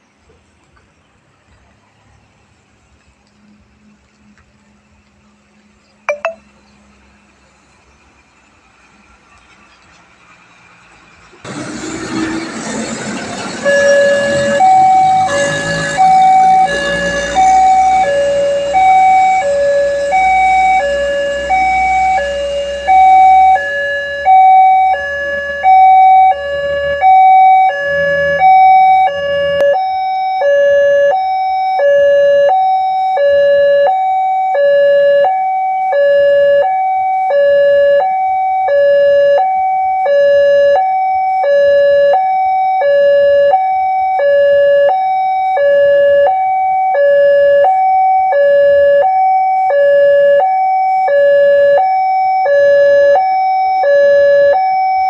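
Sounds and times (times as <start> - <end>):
two-tone level-crossing alarm: 6.1 - 6.4, 13.5 - 55.0.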